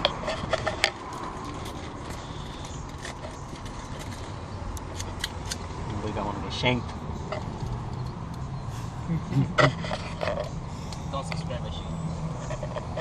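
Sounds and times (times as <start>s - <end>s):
sharp clicks and light knocks: 0.0s - 5.7s, 6.8s - 8.5s.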